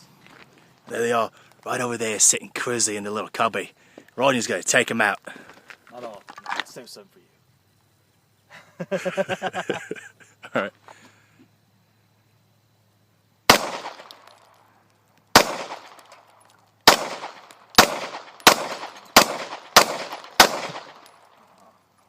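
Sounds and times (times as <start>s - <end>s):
gunshots echoing: 13.5s - 14.5s, 15.3s - 16.2s, 16.8s - 21.4s.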